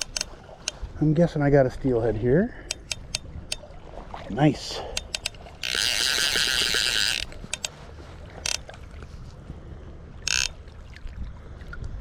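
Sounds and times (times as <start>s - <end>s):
fishing reel buzzing: 5.0s - 7.7s, 10.3s - 10.6s.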